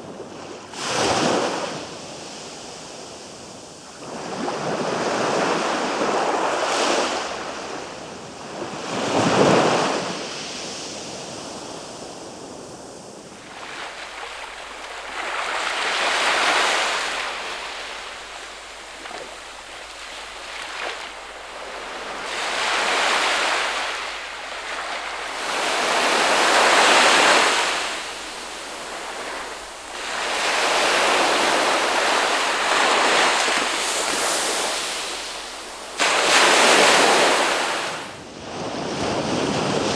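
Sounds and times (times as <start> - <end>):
ocean waves breaking: 12.3 - 38.2.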